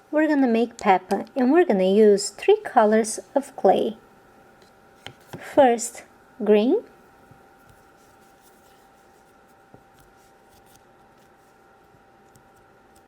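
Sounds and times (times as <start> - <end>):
faint steady hum: 0.0 - 13.0
hands handling modelling clay: 7.2 - 13.0.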